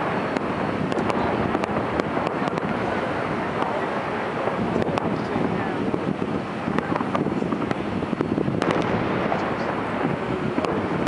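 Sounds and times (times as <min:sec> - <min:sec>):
sharp firework cracks: 0:00.0 - 0:05.5, 0:08.5 - 0:11.0
fireworks popping and crackling: 0:00.0 - 0:11.0.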